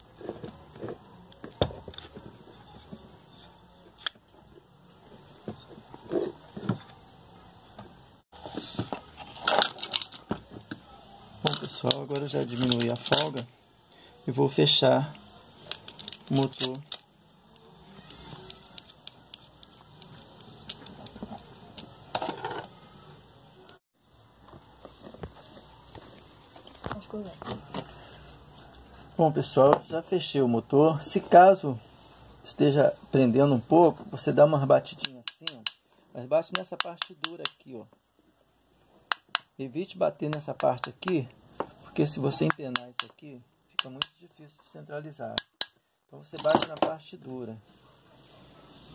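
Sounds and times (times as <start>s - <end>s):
clatter of parts: 8.8s - 10.3s, 11.4s - 13.5s, 15.7s - 17.1s.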